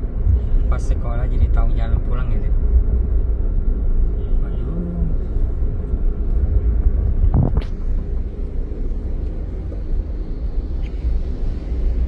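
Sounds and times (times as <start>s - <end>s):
car engine and tyre rumble: 0.0s - 12.0s.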